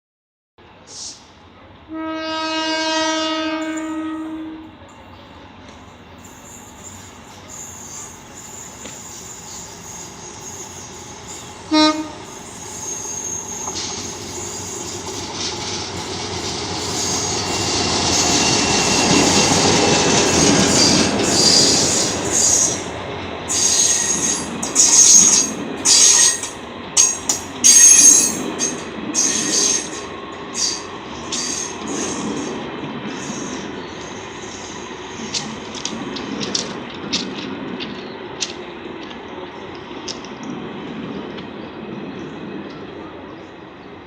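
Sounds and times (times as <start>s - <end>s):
train horn blast: 1.9s - 4.8s, 11.4s - 12.6s
locomotive engine and wheel rumble: 3.0s - 44.0s
wheel and brake squeals: 6.2s - 15.2s, 16.8s - 22.8s.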